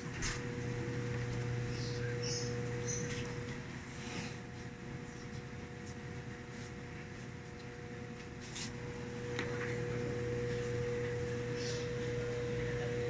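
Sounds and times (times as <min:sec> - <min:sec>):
washing machine motor humming: 0:00.0 - 0:13.0.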